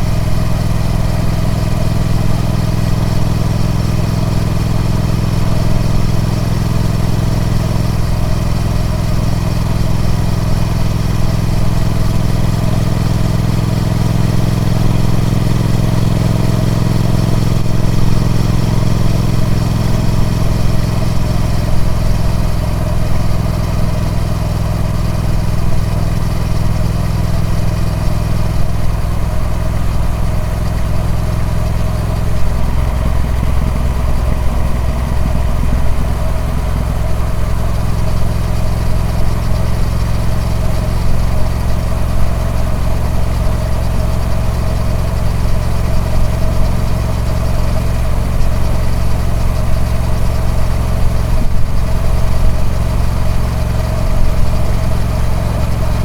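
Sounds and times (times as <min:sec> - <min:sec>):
motorcycle engine running steadily: 0:00.0 - 0:56.0.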